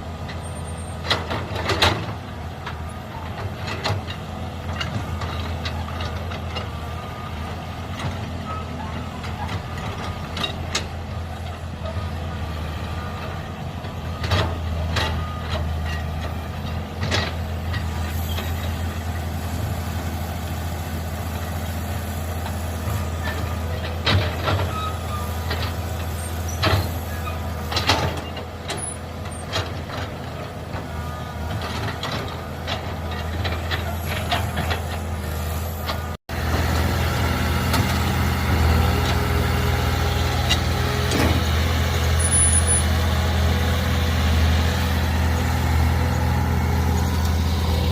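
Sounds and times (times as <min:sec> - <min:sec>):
excavator engine running: 0:00.0 - 0:47.9.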